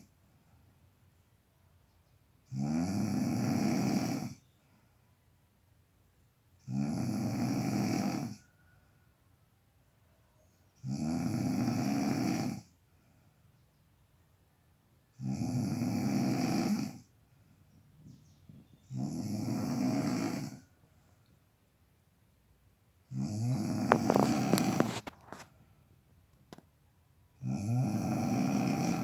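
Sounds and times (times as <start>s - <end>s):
person snoring: 2.5s - 4.4s, 6.6s - 8.5s, 10.8s - 12.7s, 15.2s - 17.1s, 18.9s - 20.7s, 23.1s - 25.4s, 27.4s - 29.0s.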